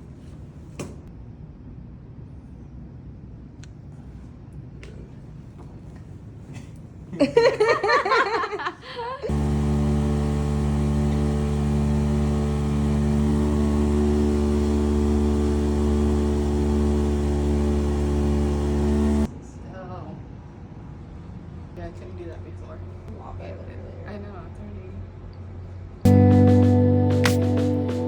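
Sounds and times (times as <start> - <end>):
low machine hum: 3.9 - 19.3, 26.1 - 28.0.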